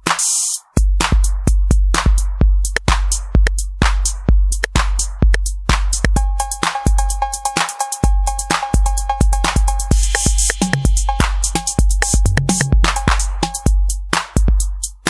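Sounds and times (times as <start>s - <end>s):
drum machine beat: 0.0s - 15.0s
pitched percussion tone: 6.2s - 13.9s.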